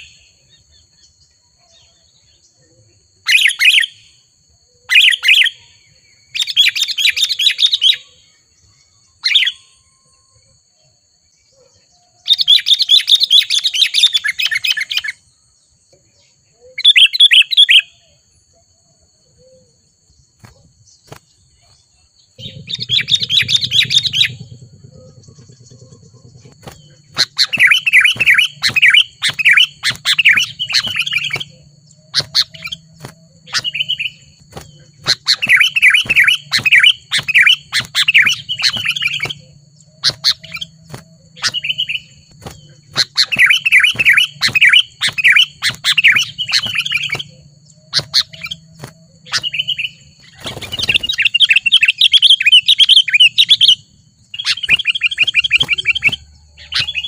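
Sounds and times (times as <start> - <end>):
bird chattering chirps: 20.4 - 57.0.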